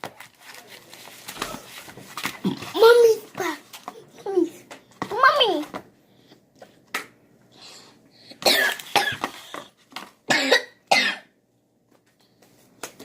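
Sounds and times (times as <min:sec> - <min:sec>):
person coughing: 0:08.4 - 0:09.5, 0:10.3 - 0:11.3.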